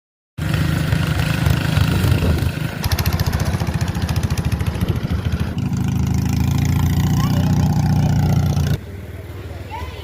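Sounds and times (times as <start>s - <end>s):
lawn mower engine running: 0.4s - 9.4s.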